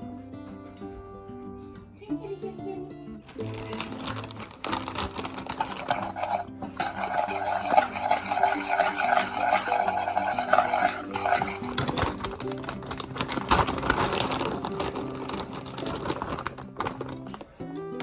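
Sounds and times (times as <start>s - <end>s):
background music: 0.0s - 18.0s
cheese grated on metal grater: 3.7s - 16.6s.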